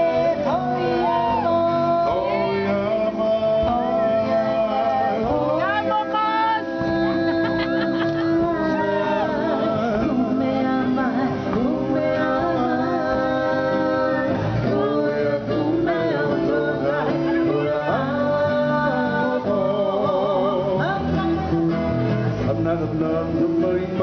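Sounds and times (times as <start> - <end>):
instrumental backing: 0.0 - 24.0
men and women singing: 0.0 - 24.0.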